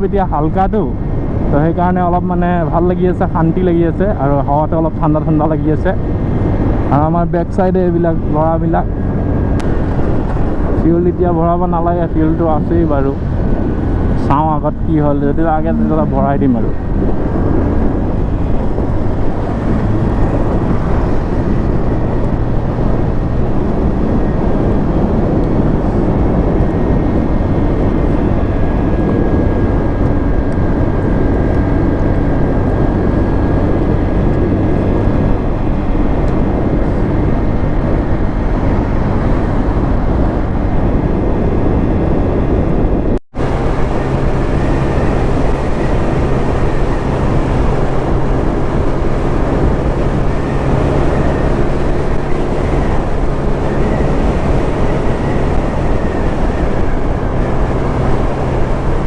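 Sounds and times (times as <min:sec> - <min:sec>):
motorcycle engine at speed: 0:00.0 - 0:59.0.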